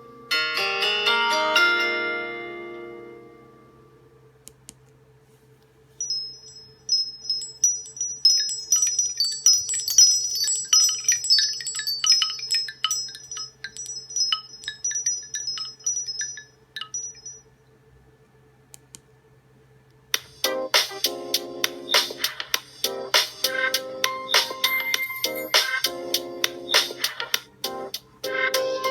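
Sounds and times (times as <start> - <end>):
faint low hum: 0.0 - 28.9
wind-chime ringtone tinkling: 6.0 - 17.6, 22.9 - 28.9.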